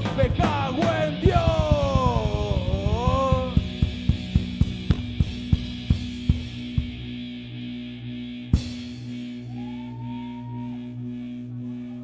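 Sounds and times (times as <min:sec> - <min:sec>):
drum hits: 0:00.0 - 0:07.1
ringing guitar and bass amplifiers: 0:00.0 - 0:12.0.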